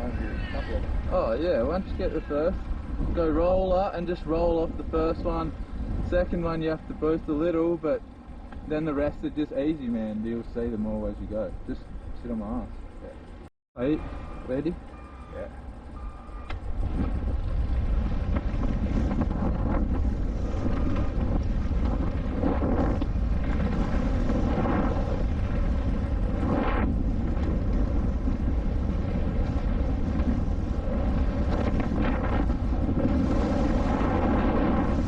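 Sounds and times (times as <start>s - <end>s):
wind rushing over microphone: 0.0s - 35.0s.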